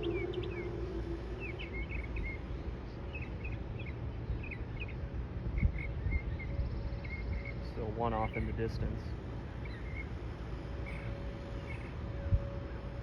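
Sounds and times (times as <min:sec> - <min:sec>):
tornado siren winding down: 0:00.0 - 0:03.4
bird chirps: 0:00.0 - 0:04.9
low outdoor rumble: 0:00.0 - 0:13.0.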